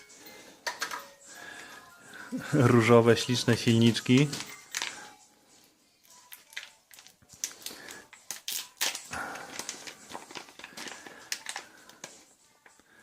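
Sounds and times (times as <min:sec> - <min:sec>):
plastic packaging crinkling: 0:03.2 - 0:05.2, 0:06.1 - 0:12.8.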